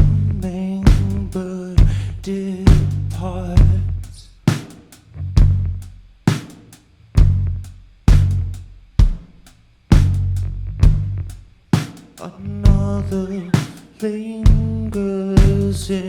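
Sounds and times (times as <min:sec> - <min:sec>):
drum kit heavy beat: 0:00.0 - 0:02.0, 0:02.7 - 0:03.8, 0:04.4 - 0:16.0
low bass: 0:00.0 - 0:04.5, 0:05.1 - 0:06.2, 0:07.1 - 0:09.1, 0:09.9 - 0:11.6, 0:12.4 - 0:13.4, 0:14.5 - 0:16.0
cymbal and snare strokes: 0:04.5 - 0:05.1, 0:05.8 - 0:07.0, 0:08.1 - 0:10.4, 0:11.7 - 0:12.3, 0:13.6 - 0:14.2.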